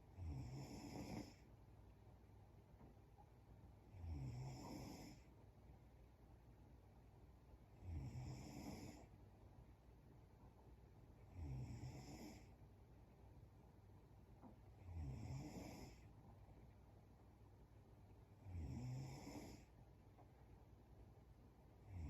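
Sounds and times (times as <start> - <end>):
woman snoring faintly: 0.2 - 1.5, 3.9 - 5.3, 7.8 - 9.1, 11.3 - 12.5, 14.8 - 16.1, 18.4 - 19.7.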